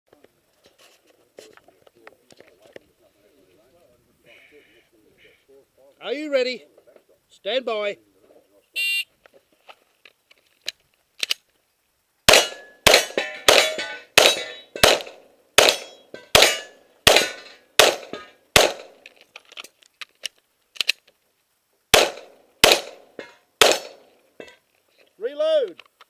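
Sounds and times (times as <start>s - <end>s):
pistol shots with ringing tail: 12.3s - 19.0s, 21.9s - 24.1s.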